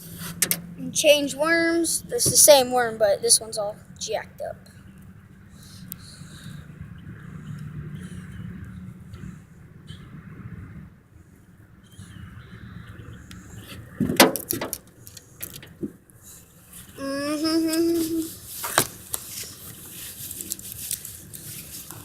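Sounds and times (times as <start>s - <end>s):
child's drawn-out wordless voice: 0.8s - 4.7s, 17.0s - 18.4s.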